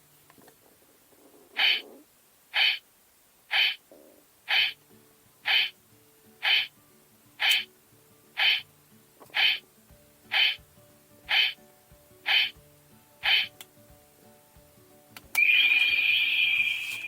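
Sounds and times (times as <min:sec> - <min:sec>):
electronic pulse from toy speaker: 0:15.4 - 0:17.0.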